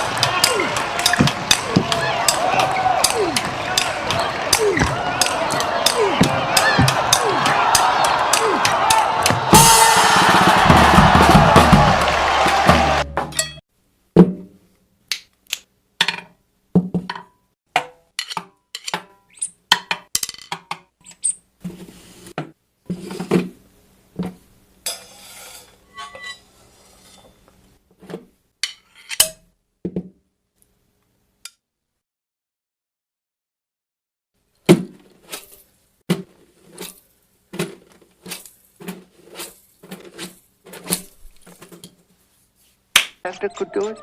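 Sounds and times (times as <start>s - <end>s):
drumbeat: 0.0s - 13.4s.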